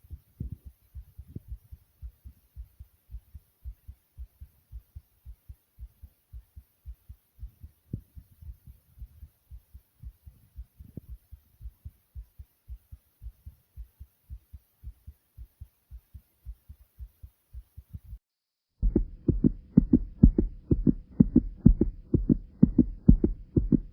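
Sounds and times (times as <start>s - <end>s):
faint steady hum: 0.0s - 18.2s, 18.8s - 23.9s
fast heartbeat thumps: 0.0s - 18.2s, 18.8s - 23.9s.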